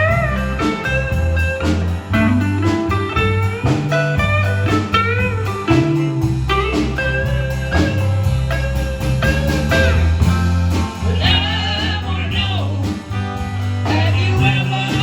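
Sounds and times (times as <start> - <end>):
drum beat: 0.0 - 15.0
low bass line: 0.0 - 15.0.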